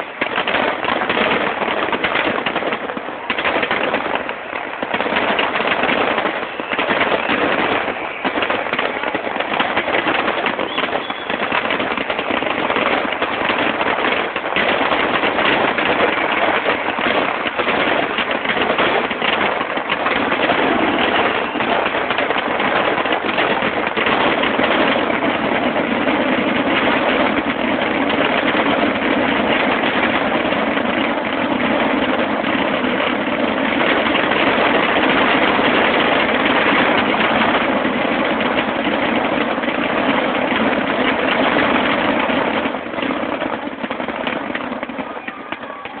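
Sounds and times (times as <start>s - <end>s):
fireworks bursting: 0.0s - 46.0s.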